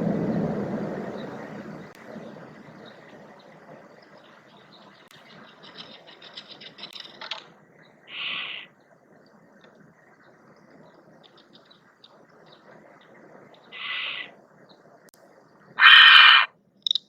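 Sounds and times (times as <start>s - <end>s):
owl hissing shrieks: 8.1s - 8.7s, 13.8s - 14.3s, 15.8s - 16.5s.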